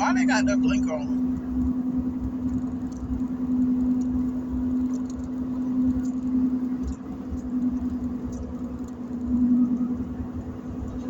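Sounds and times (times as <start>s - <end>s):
car idling hum: 0.0s - 11.0s.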